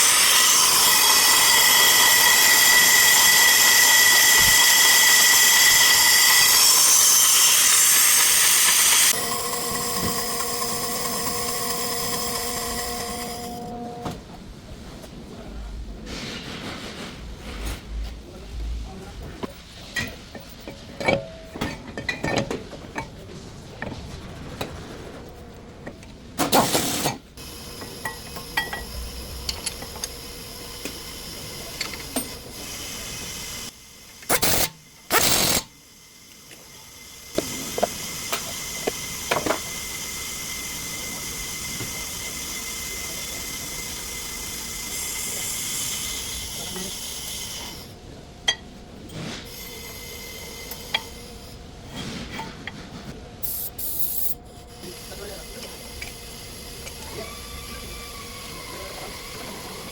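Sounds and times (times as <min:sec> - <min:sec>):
hand tools clinking and knocking: 0:19.9 - 0:23.2.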